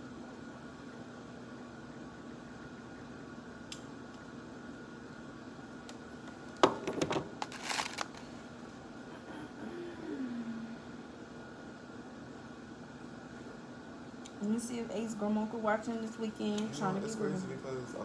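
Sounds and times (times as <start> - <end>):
steady background hum: 0.0 - 18.0
objects clattering and rustling: 6.6 - 8.4.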